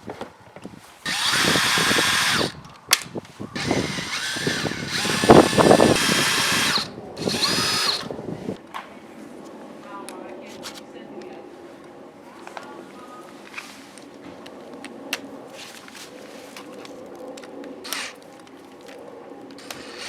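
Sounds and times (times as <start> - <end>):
power drill motor whine: 1.0 - 2.6, 3.6 - 8.2, 17.8 - 18.2, 19.6 - 20.0.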